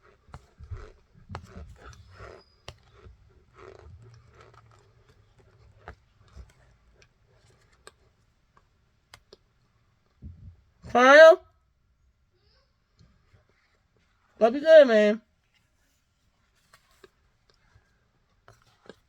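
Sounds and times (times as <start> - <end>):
person eating with soft crunching: 0.0 - 9.4, 15.5 - 19.0.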